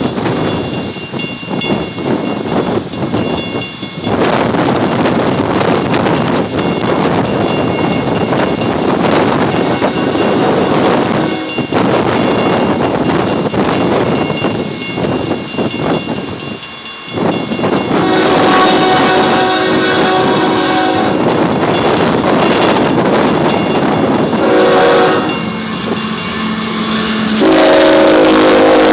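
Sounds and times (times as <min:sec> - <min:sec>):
freight train rumbling past: 0:00.0 - 0:28.9
gusting wind: 0:00.0 - 0:28.9
locomotive horn: 0:09.8 - 0:11.6, 0:17.9 - 0:21.3, 0:24.3 - 0:25.5, 0:27.3 - 0:28.9.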